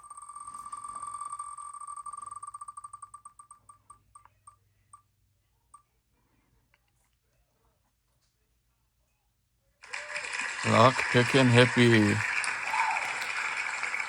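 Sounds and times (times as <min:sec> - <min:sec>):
spinning wheel ticking: 0:00.0 - 0:05.1.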